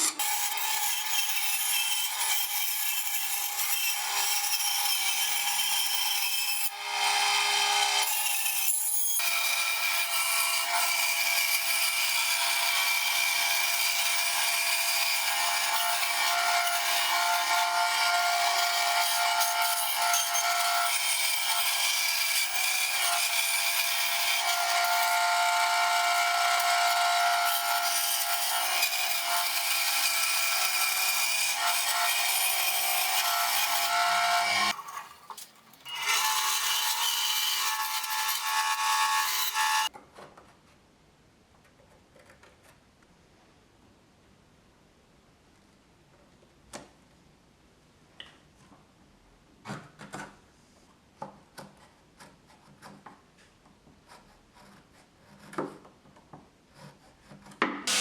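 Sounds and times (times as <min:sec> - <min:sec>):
power saw cutting wood: 0:00.0 - 0:39.9.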